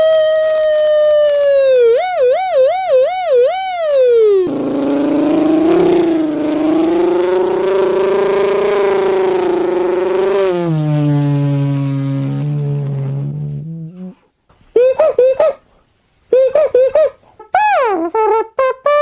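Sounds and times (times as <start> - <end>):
man imitating sound effects: 4.5 - 14.2, 14.8 - 15.6, 16.3 - 19.0.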